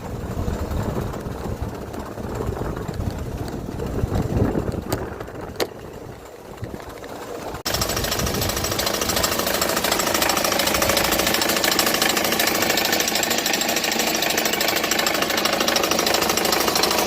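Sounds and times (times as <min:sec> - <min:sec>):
engine idling unevenly: 0:00.0 - 0:17.0.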